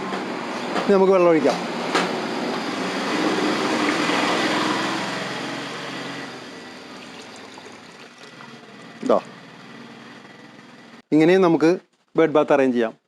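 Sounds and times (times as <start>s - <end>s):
water pouring and splashing: 3.2s - 5.1s, 6.9s - 9.0s.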